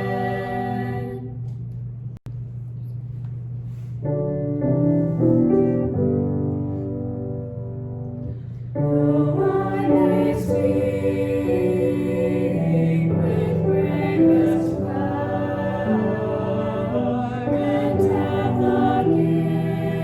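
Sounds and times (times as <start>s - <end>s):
choir singing: 0.0s - 1.4s, 8.8s - 20.0s
slow sacred music: 2.9s - 20.0s.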